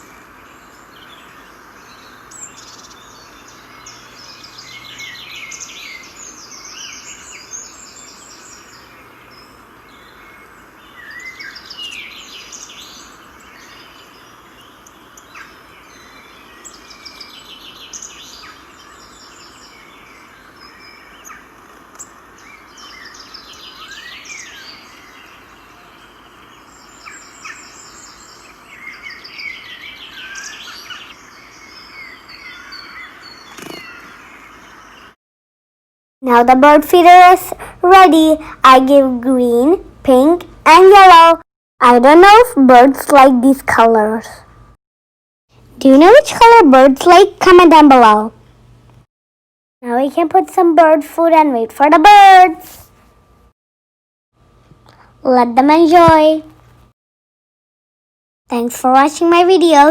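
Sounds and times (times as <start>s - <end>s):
outdoor background hiss: 0.0s - 35.2s, 36.2s - 44.8s, 45.5s - 49.1s, 49.8s - 53.5s, 54.4s - 56.9s, 58.5s - 59.9s
small birds chirping and singing: 0.0s - 35.2s.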